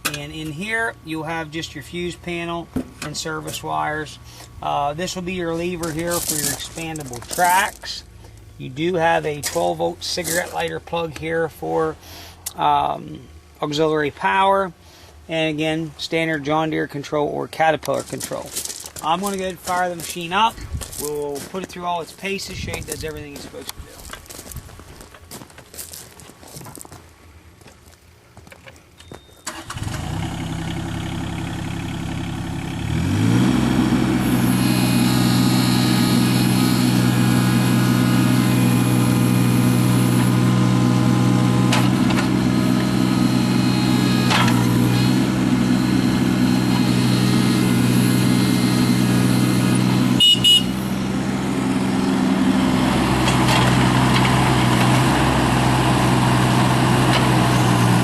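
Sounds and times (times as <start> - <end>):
diesel engine starting and idling: 0.0 - 13.0, 29.4 - 58.0
short high beep: 50.2 - 50.9.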